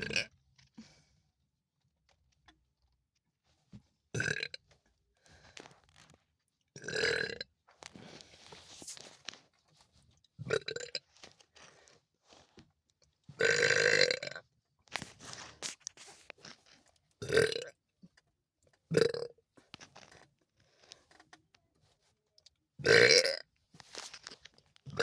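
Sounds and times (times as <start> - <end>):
woman burping: 0.0 - 0.3, 18.9 - 19.3.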